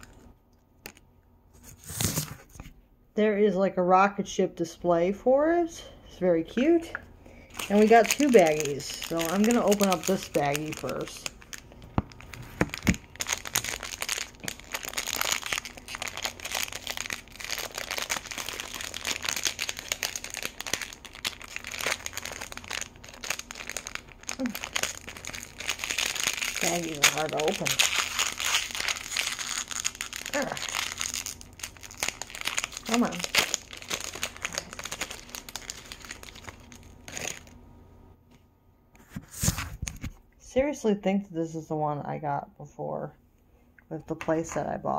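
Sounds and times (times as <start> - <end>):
plastic bag crinkling: 7.3 - 37.6.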